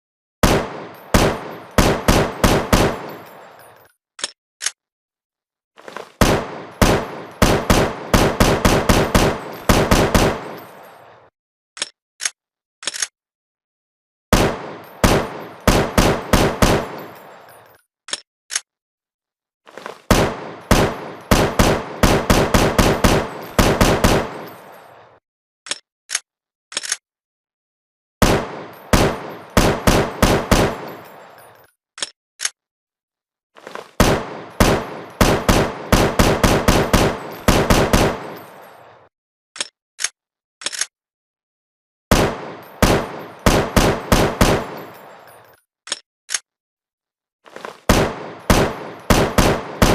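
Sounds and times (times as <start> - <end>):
automatic rifle fire bursts: 0.4 - 3.2, 6.2 - 10.6, 14.3 - 17.0, 20.1 - 24.5, 28.2 - 31.0, 34.0 - 38.4, 42.1 - 44.8, 47.9 - 49.9.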